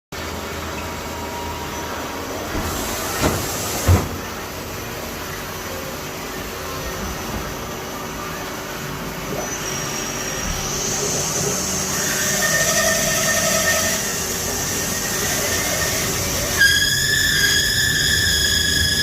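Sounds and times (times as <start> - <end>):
sharp loud squeal: 9.4 - 19.0.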